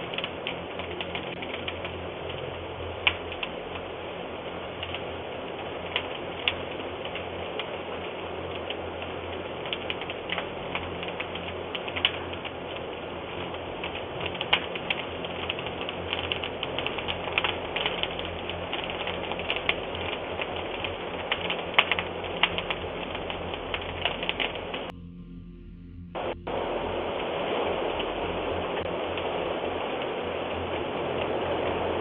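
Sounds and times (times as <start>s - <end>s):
fire crackling and popping: 0.0s - 24.9s, 26.4s - 32.0s
low steady hum: 0.0s - 32.0s.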